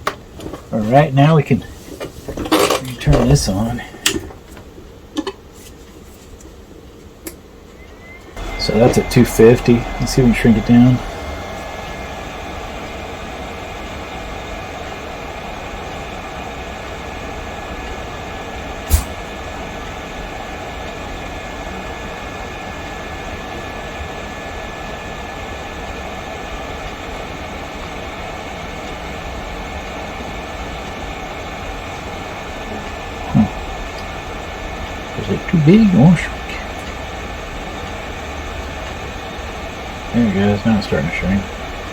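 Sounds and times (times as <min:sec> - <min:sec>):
thin steady whine: 0:00.7 - 0:04.2, 0:07.6 - 0:41.9
heat gun blowing air: 0:08.4 - 0:17.4, 0:18.8 - 0:19.4
short click: 0:18.9 - 0:19.2.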